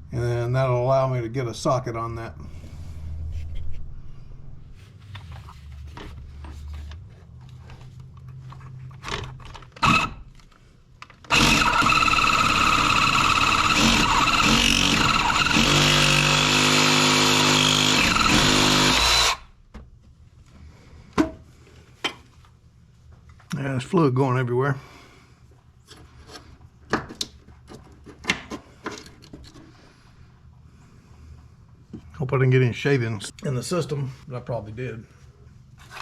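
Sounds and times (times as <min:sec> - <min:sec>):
power cutting tool whining: 0:09.8 - 0:10.2, 0:11.3 - 0:19.4.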